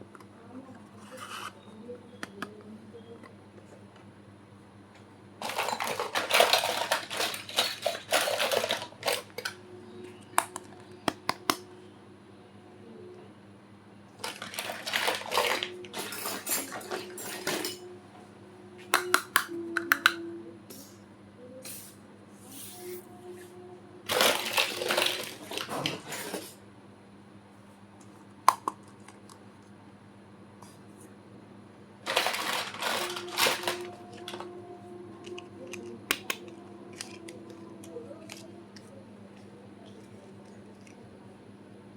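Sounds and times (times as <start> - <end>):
packaging rustling: 14.2 - 15.8, 24.1 - 26.0, 32.0 - 34.5.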